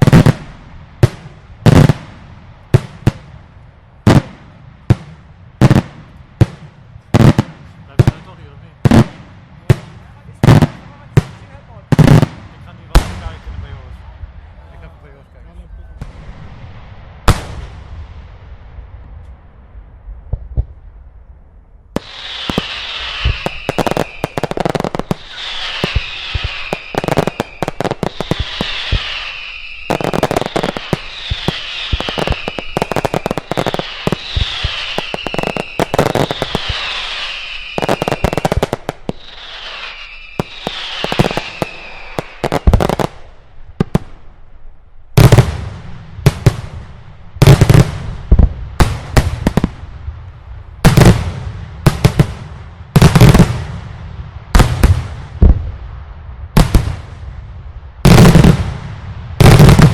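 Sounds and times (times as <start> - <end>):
heavy firework bangs: 0.0 - 14.4, 16.0 - 21.2, 21.9 - 44.4, 45.1 - 59.9
fireworks cracking and banging: 0.0 - 15.2, 21.9 - 44.5, 45.1 - 55.9, 56.5 - 59.9
falling firework whistle: 22.0 - 42.8.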